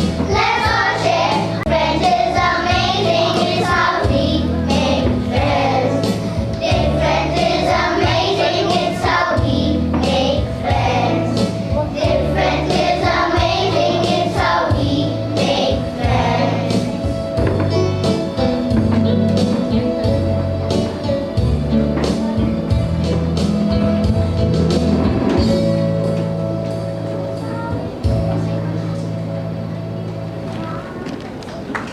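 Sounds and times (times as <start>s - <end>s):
children's choir singing: 0.0s - 20.2s
instrumental accompaniment: 0.0s - 31.4s.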